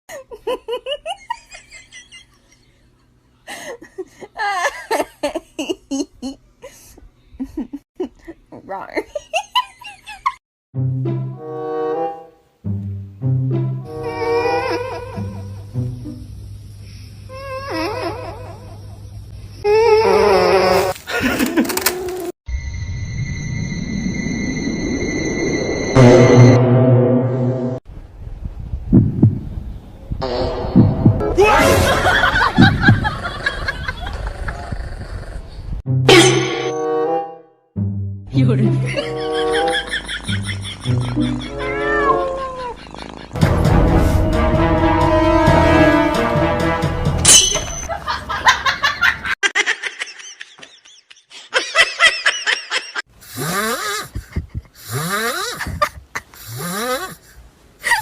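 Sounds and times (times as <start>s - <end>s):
low rumble: 22.6s - 29.9s
heartbeat: 28.4s - 29.6s, 30.6s - 31.2s, 32.5s - 33.2s, 54.1s - 54.8s
people laughing: 31.6s - 34.7s, 38.8s - 41.7s, 47.9s - 53.0s.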